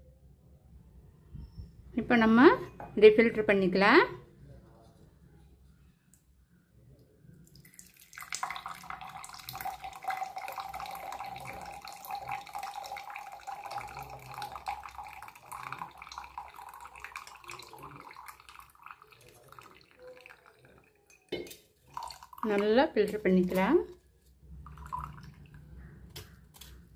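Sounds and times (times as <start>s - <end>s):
liquid trickling through a strainer: 7.5s - 26.9s.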